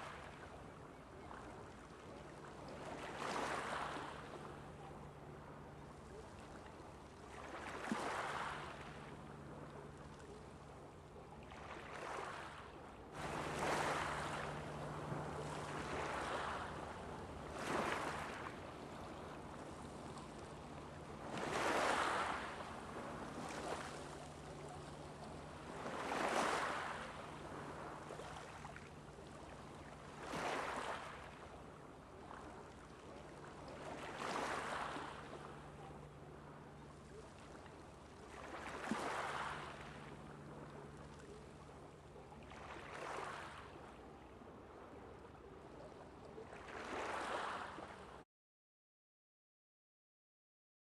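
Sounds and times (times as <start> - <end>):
small waves washing onto beach: 0.0 - 48.2
steady low hum: 13.1 - 30.3.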